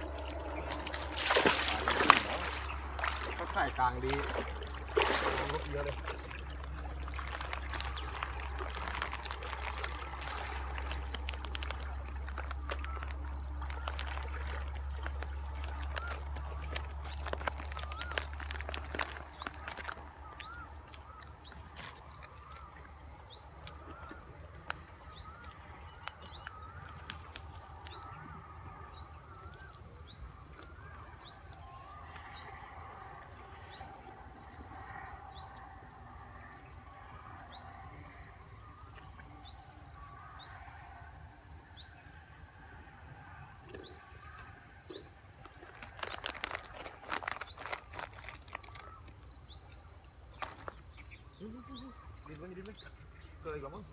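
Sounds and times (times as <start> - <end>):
birds calling: 0.0 - 21.7
high insect chirp: 0.0 - 53.9
insect chorus drone: 0.0 - 53.9.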